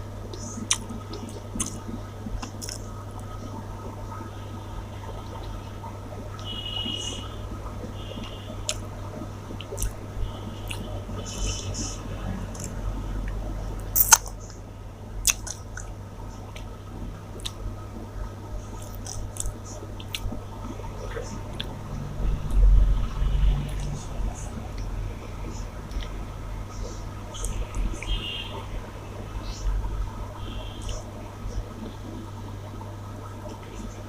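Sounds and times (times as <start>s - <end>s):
steady low hum: 0.0s - 34.0s
person chewing food: 0.6s - 1.8s, 2.4s - 2.8s, 9.6s - 10.0s, 10.6s - 10.8s, 14.0s - 14.4s, 15.2s - 15.9s, 18.8s - 20.4s.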